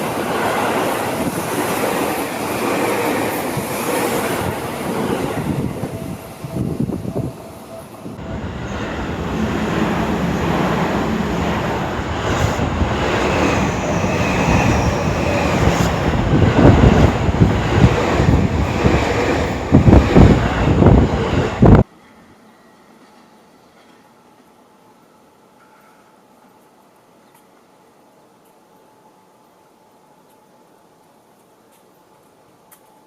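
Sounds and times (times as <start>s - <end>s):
electric train passing at speed: 0.0s - 23.1s.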